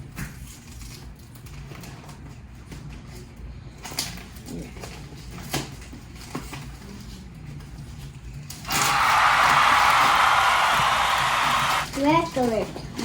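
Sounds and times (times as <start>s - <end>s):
loud even hissing: 8.7s - 11.9s.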